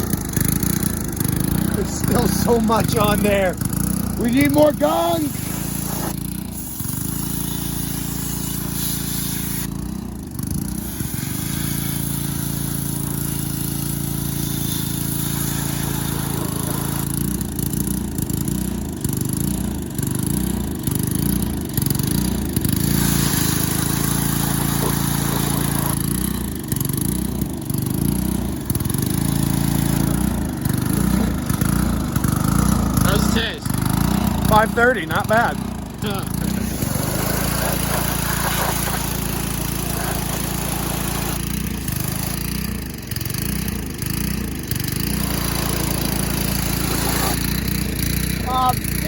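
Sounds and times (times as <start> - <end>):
small engine running: 0.0 - 49.0
water spray hissing: 4.2 - 9.7, 10.8 - 17.2, 22.8 - 26.2, 36.2 - 42.4, 45.1 - 48.7.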